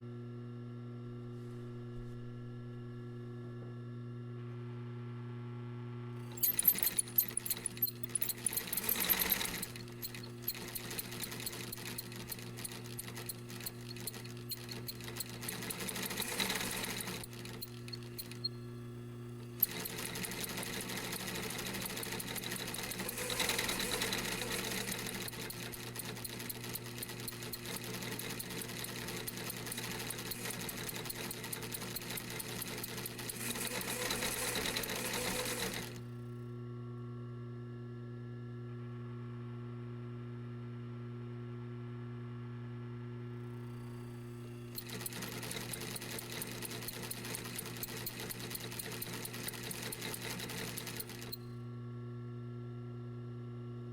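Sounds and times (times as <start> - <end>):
sewing machine motor hum: 6.2 - 36.2, 43.6 - 51.5
sewing machine needle clatter: 6.3 - 18.5, 19.4 - 36.0, 44.7 - 51.4.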